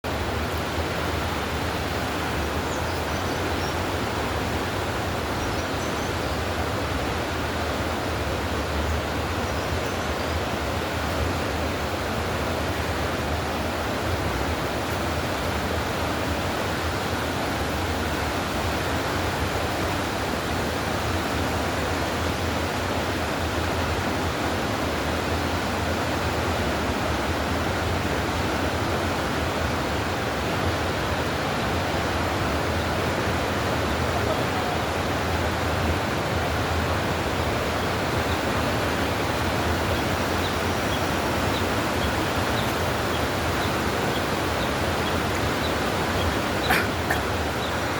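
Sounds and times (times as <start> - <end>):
river water rushing: 0.1 - 47.9.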